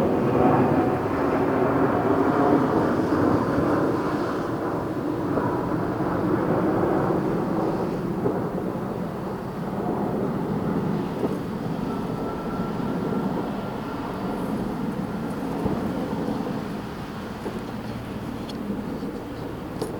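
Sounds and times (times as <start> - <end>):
distant fireworks rumbling: 6.9 - 19.9.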